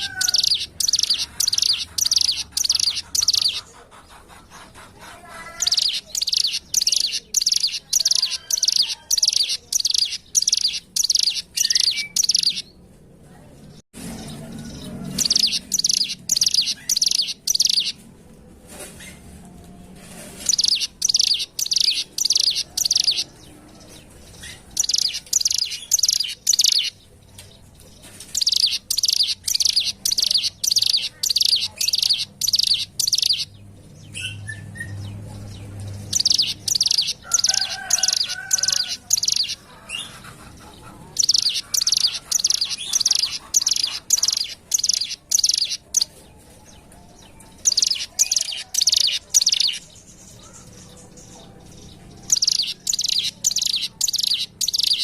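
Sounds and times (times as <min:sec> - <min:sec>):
bird singing high chipping notes: 0:00.0 - 0:03.6, 0:05.6 - 0:12.8, 0:15.1 - 0:18.0, 0:20.4 - 0:23.4, 0:24.3 - 0:27.1, 0:28.3 - 0:35.0, 0:35.9 - 0:39.7, 0:41.2 - 0:46.2.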